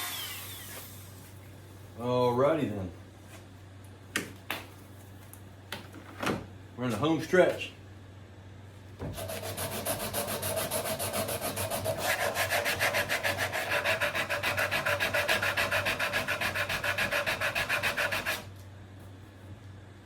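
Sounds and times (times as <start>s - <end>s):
sandpaper rubbing wood: 9.2s - 18.5s.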